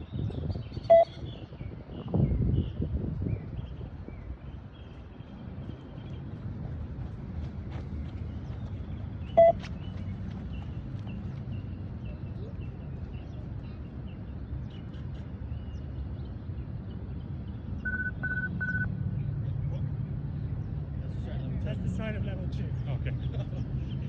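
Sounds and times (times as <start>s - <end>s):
short loud beeps from speaker: 0.9s - 1.2s.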